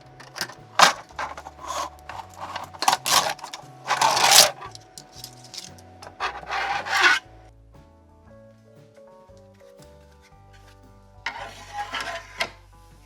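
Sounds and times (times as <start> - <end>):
plastic scraping on saw table: 0.0 - 7.2, 11.3 - 12.6
soft background music: 0.0 - 13.0
plastic clicks: 0.1 - 7.2.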